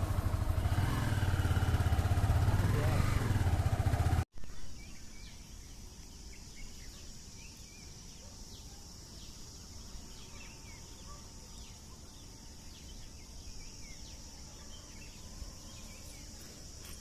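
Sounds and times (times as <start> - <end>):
insects buzzing: 0.0 - 17.0.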